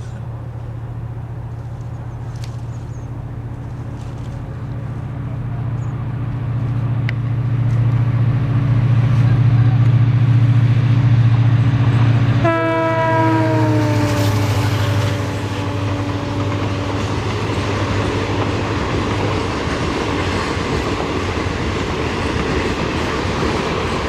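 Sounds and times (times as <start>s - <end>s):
train engine drone: 0.0s - 24.0s
train horn: 12.0s - 18.7s.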